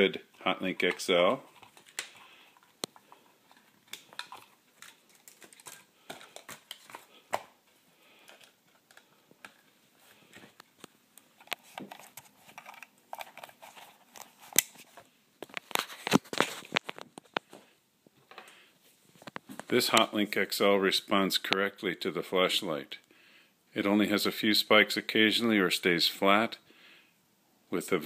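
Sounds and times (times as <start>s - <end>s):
wires rustling: 0.0s - 20.2s.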